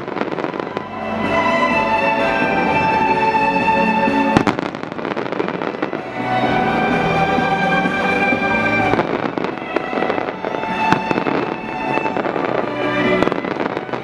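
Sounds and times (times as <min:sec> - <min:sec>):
fireworks pops and bangs: 0:00.0 - 0:00.8, 0:04.4 - 0:05.9, 0:10.9 - 0:14.0
music with long held notes: 0:00.0 - 0:14.0.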